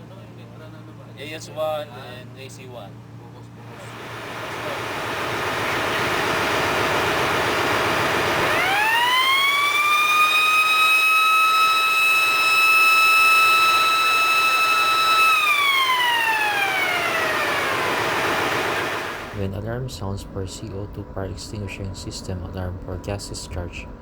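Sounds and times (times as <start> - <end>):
rushing noise: 3.7 - 10.5
alarm siren wailing: 5.5 - 19.4.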